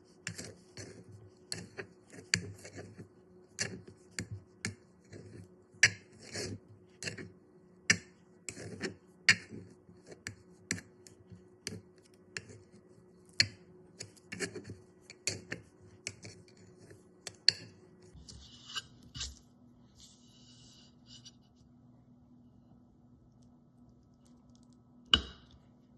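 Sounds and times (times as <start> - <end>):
short scrapes: 18.1 - 21.6.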